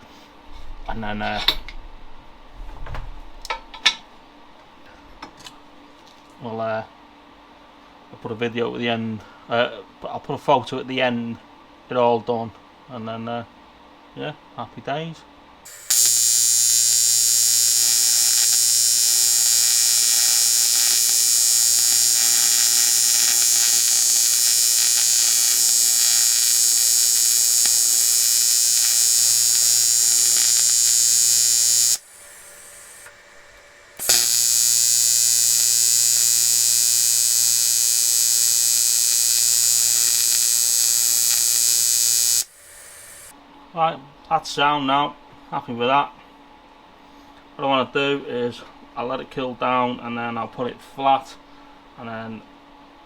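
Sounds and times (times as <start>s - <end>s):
electric welding arc buzzing: 15.7s - 43.3s.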